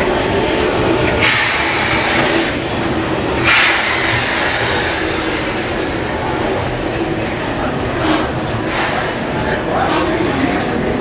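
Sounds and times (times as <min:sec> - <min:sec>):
steam locomotive hissing: 0:00.0 - 0:11.0
loud burst of steam: 0:03.4 - 0:07.0, 0:07.9 - 0:10.0.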